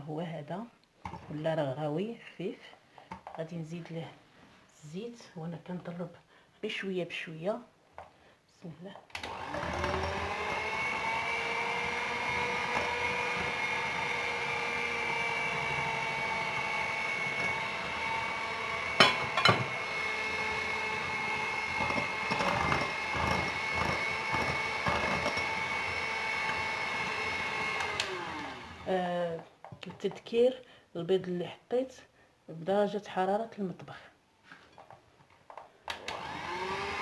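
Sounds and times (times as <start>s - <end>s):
electric mixer whipping batter: 9.3s - 28.9s, 36.0s - 37.0s.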